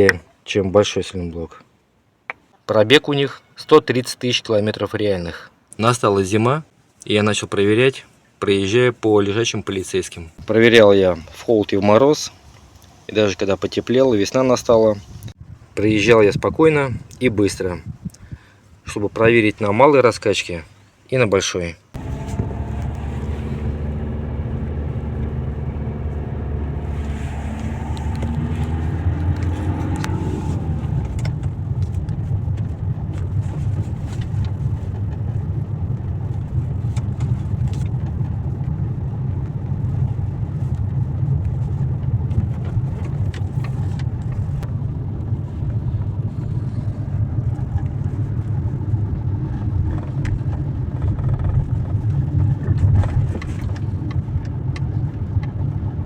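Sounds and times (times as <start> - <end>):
road rumble: 21.9 - 56.0
car engine: 22.0 - 56.0.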